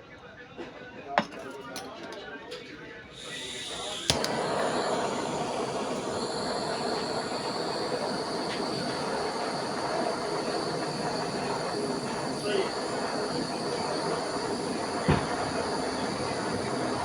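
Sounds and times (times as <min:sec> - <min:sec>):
train rumbling: 0:04.1 - 0:17.0.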